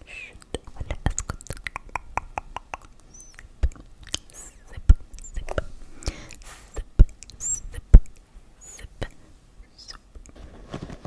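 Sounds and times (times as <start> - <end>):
soft hissy rustles: 3.0 - 11.0.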